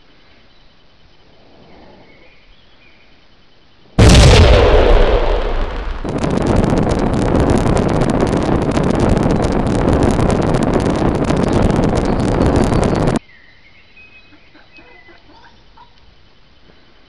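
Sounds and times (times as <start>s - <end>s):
continuous crackling rumble: 4.0s - 13.2s
explosion blast: 4.0s - 13.2s.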